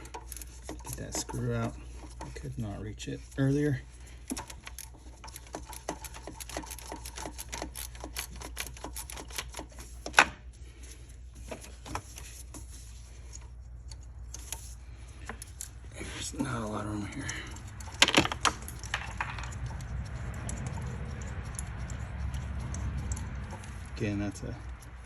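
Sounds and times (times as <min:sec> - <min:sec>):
hand ratchet clicking: 0:00.0 - 0:02.4, 0:04.0 - 0:10.2, 0:16.4 - 0:25.0.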